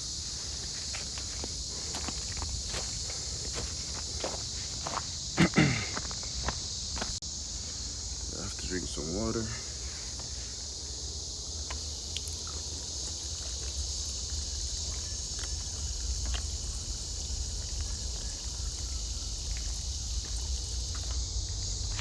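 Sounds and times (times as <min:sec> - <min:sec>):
high-pitched insect chorus: 0:00.0 - 0:22.0
faint clicks: 0:11.6 - 0:12.6
wind rumble on microphone: 0:13.2 - 0:22.0.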